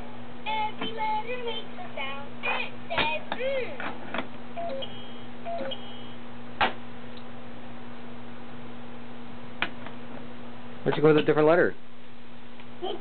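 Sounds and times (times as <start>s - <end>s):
steady low hum: 0.0s - 13.0s
electronic toy tones and beeps: 4.6s - 6.1s.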